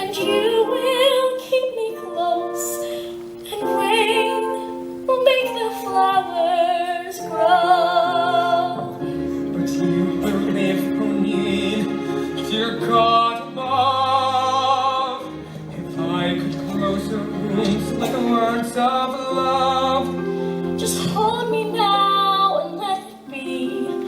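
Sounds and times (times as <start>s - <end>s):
woman singing with vibrato: 0.0s - 9.2s, 20.7s - 24.0s.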